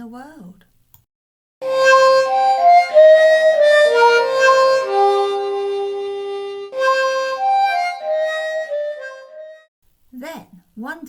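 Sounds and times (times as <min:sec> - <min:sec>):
slow reedy instrumental tune: 0:01.6 - 0:09.7.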